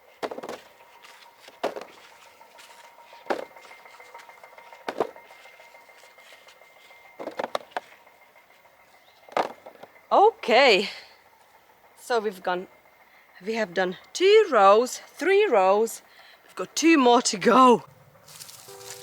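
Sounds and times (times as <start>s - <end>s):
potatoes knocking and scuffing: 18.3s - 19.0s.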